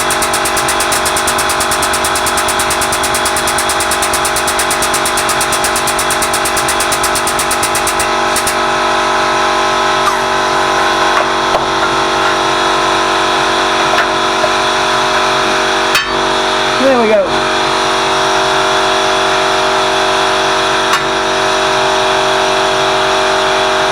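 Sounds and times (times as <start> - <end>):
fast pulsing hiss: 0.0 - 8.6
air compressor running: 0.0 - 23.9.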